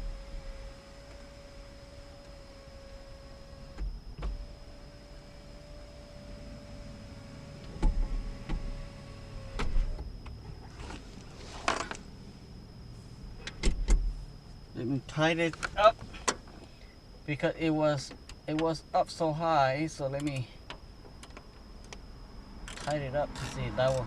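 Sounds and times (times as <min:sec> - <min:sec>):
power window motor running: 0:00.0 - 0:12.2, 0:22.6 - 0:24.0
scraping rustle: 0:10.6 - 0:12.0.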